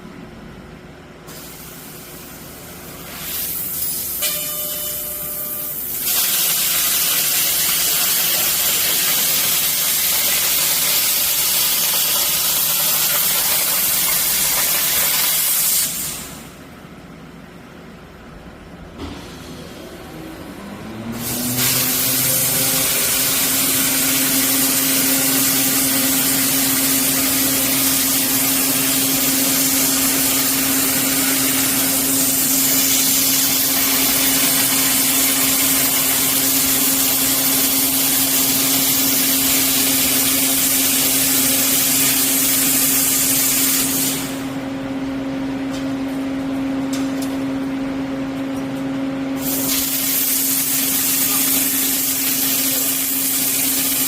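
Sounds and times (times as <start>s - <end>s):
low machine tone: 3.8s - 7.0s, 16.5s - 36.7s
band saw blade hissing through steel: 6.0s - 16.4s, 21.2s - 44.4s.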